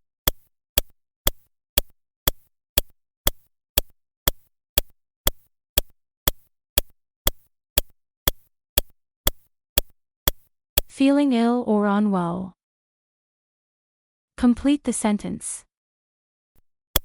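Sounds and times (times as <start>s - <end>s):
clock ticking: 0.2s - 10.9s.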